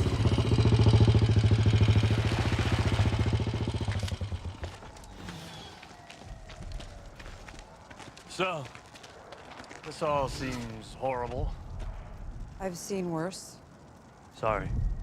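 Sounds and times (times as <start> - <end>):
motorcycle engine running: 0.0 - 5.5, 10.8 - 15.0.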